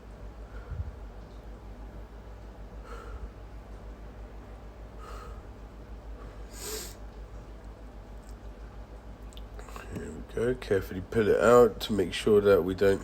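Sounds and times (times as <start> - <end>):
steady low hum: 0.0 - 13.0
nasal breaths: 6.2 - 7.1.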